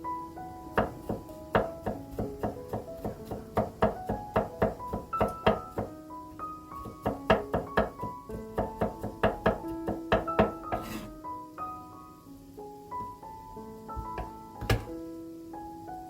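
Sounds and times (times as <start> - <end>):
gentle piano music: 0.0 - 16.0
knife chopping on cutting board: 0.8 - 5.9, 6.7 - 11.1, 14.0 - 14.9.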